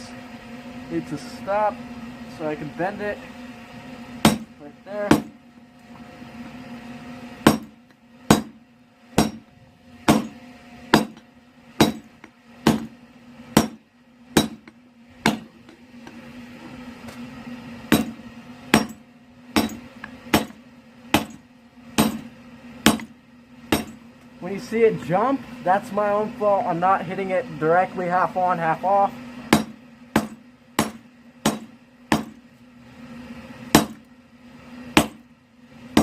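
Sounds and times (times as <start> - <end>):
steady low hum: 0.0 - 36.0
hammer blows on hot steel: 4.2 - 5.4.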